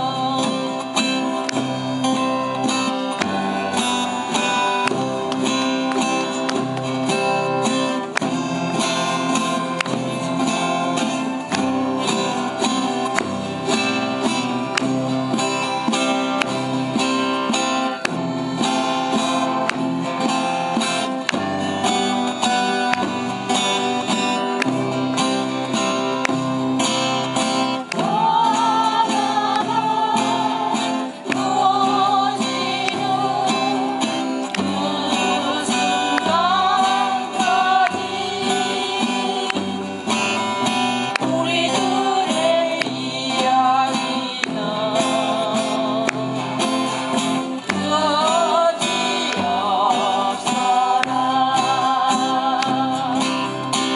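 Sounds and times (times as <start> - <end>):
person singing with vibrato: 0.0 - 53.9
strummed acoustic guitar: 0.0 - 53.9.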